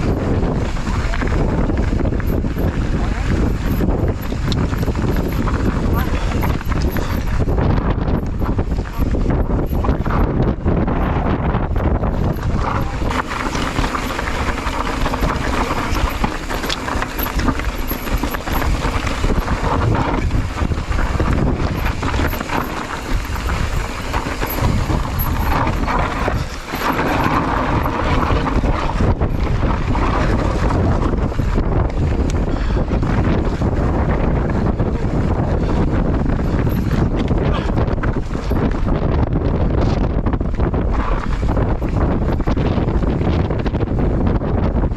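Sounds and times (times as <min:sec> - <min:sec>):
wind buffeting microphone: 0:00.0 - 0:44.9.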